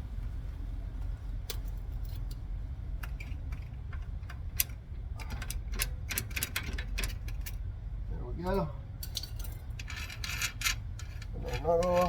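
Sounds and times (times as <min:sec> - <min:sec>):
steady low hum: 0:00.0 - 0:12.0
hand tools clicking and clinking: 0:09.0 - 0:12.0.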